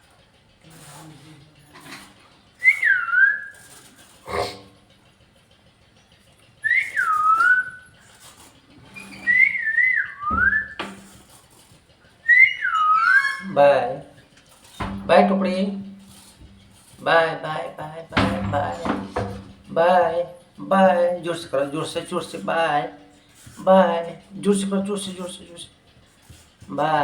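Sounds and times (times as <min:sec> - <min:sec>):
parrot whistle-like calls: 0:02.6 - 0:03.8, 0:06.6 - 0:07.8, 0:09.0 - 0:10.8, 0:12.2 - 0:13.5.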